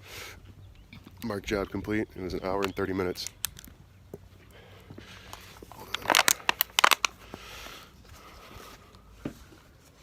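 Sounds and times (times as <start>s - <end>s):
paper flyer crinkling: 5.8s - 7.1s.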